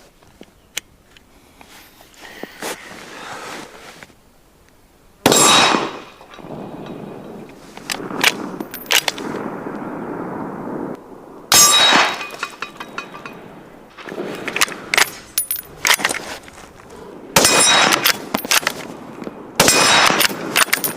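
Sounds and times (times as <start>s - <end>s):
loud ringing bangs: 11.5s - 13.5s, 17.4s - 18.0s.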